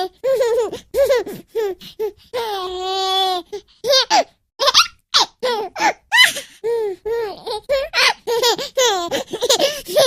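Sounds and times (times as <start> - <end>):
baby girl laughing: 3.8 - 6.5, 7.6 - 10.0.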